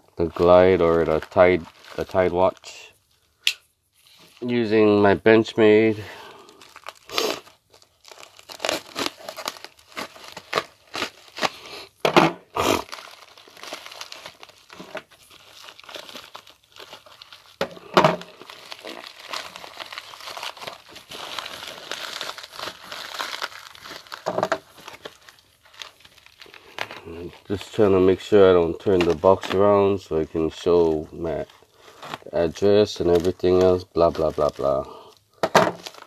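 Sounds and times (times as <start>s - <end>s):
packaging crinkling: 0.0s - 3.4s, 6.1s - 36.0s
packing tape slit and torn: 6.8s - 11.6s.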